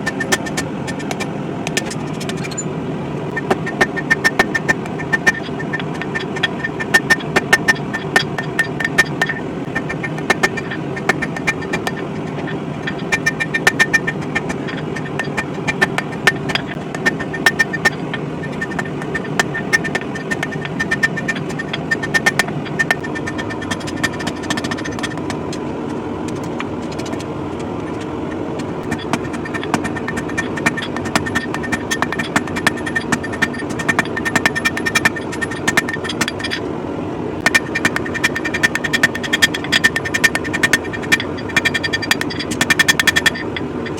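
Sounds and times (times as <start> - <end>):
hammer striking steel on anvil: 3.3 - 25.4, 28.9 - 36.6.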